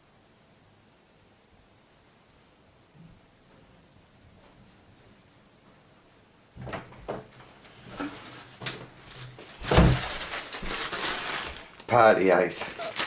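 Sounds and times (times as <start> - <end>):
heavy thump: 9.6 - 10.1.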